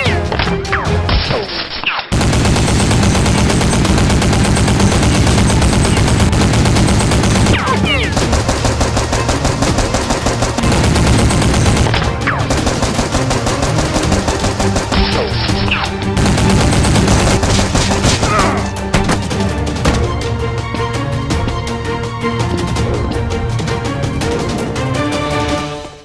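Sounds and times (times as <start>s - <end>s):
machine-gun fire: 2.1s - 15.6s, 16.2s - 18.4s.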